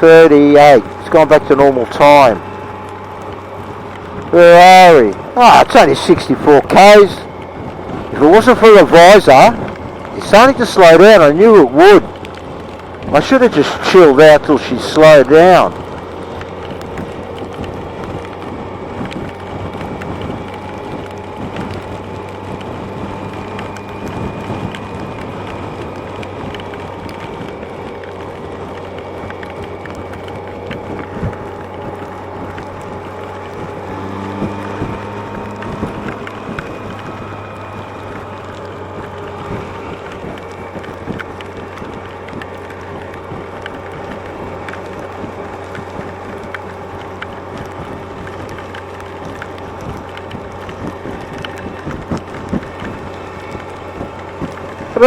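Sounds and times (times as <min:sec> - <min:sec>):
motorcycle engine running: 0:00.0 - 0:55.0
wind and rain on microphone: 0:00.0 - 0:55.0.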